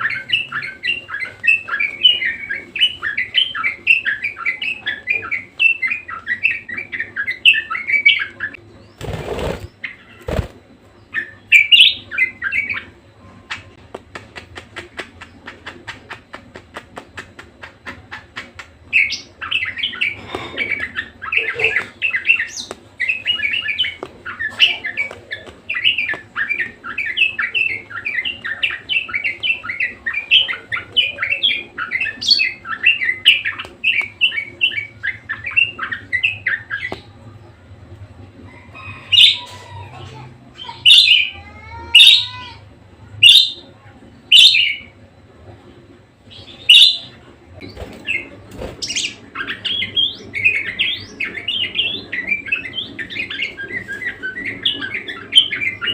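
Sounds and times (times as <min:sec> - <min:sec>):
budgerigar sharp calls: 0:46.6 - 0:47.1.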